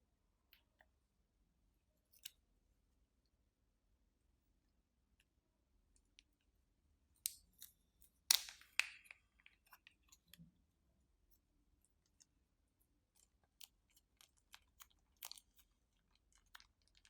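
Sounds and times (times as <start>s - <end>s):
sharp clicks and crackly pops: 8.3s - 10.5s.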